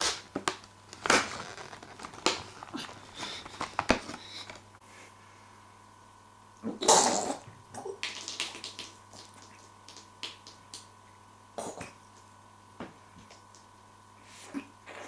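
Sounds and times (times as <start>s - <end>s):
wet splashing and spluttering: 7.1s - 10.9s.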